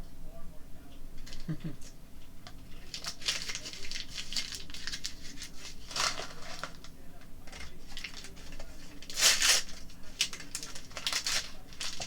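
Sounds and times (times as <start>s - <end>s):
plastic packaging crinkling: 2.7s - 12.0s.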